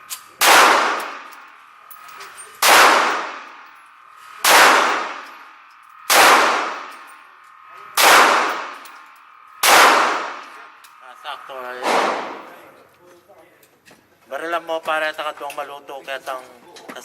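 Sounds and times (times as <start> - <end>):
pistol shots echoing: 0.4 - 1.4, 2.6 - 3.6, 4.4 - 5.4, 6.1 - 7.1, 8.0 - 8.9, 9.6 - 10.7, 11.8 - 12.5.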